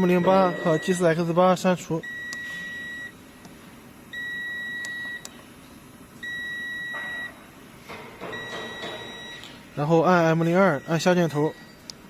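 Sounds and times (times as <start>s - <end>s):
high-pitched electronic beeps: 0.0s - 1.0s.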